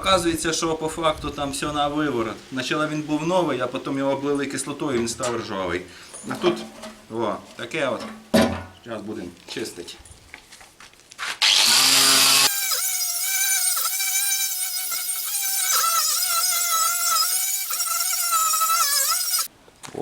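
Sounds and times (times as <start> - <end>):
power tool motor whining: 11.4 - 19.5.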